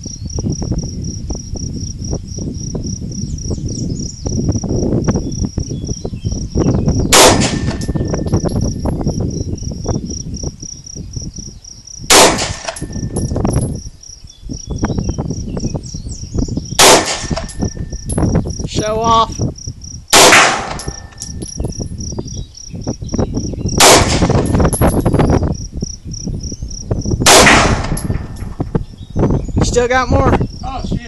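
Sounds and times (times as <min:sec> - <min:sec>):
insects chirping: 0:00.0 - 0:31.0
pistol shots: 0:07.1 - 0:08.0, 0:12.1 - 0:12.9, 0:16.8 - 0:17.5, 0:20.1 - 0:21.1, 0:23.8 - 0:24.6, 0:27.2 - 0:28.4
metallic ring of steel target: 0:07.2 - 0:09.0, 0:12.1 - 0:13.8, 0:16.8 - 0:18.4, 0:20.2 - 0:21.9, 0:24.0 - 0:25.3, 0:27.3 - 0:28.6.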